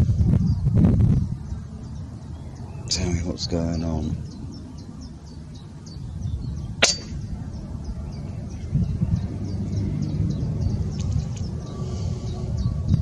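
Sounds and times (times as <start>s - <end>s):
wind rumble on microphone: 0.0s - 13.0s
air rifle shot: 6.8s - 7.2s.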